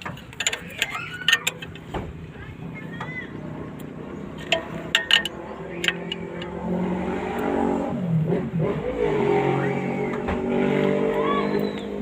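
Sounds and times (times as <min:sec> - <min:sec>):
sharp metallic clicks: 0:00.0 - 0:02.0, 0:03.8 - 0:07.5
engine running: 0:00.0 - 0:12.0.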